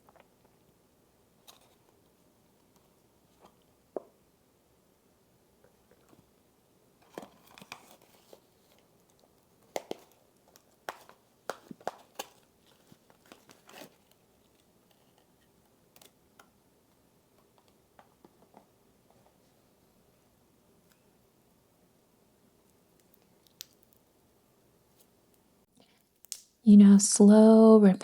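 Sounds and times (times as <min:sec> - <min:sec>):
slime crackling and clicking: 0:23.0 - 0:24.0.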